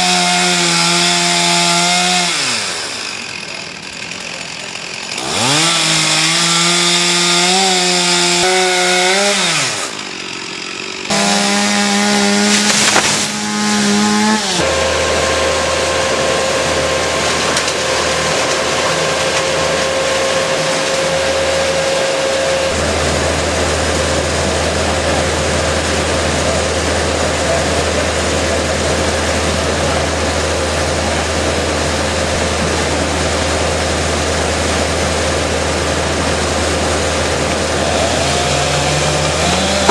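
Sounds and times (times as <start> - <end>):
chainsaw cutting wood: 0.0 - 39.9
heavy engine droning: 0.0 - 39.9.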